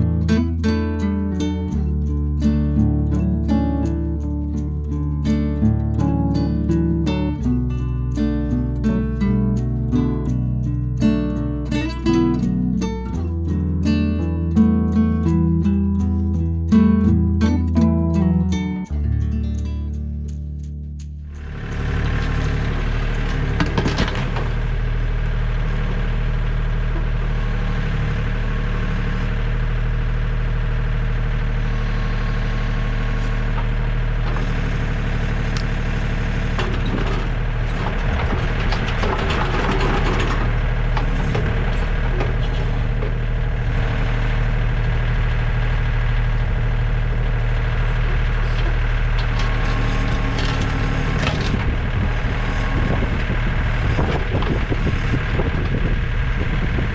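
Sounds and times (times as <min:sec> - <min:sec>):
diesel engine running under load: 0:00.0 - 0:56.9
wood cracking and splintering: 0:21.4 - 0:25.0, 0:33.4 - 0:44.7, 0:48.3 - 0:55.8.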